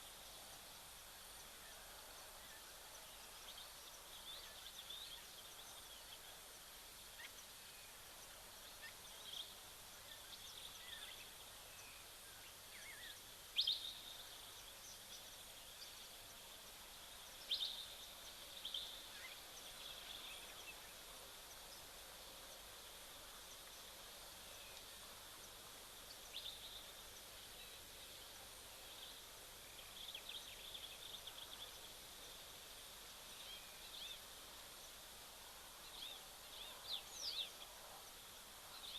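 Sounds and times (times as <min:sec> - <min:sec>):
steady hiss: 0:00.0 - 0:38.9.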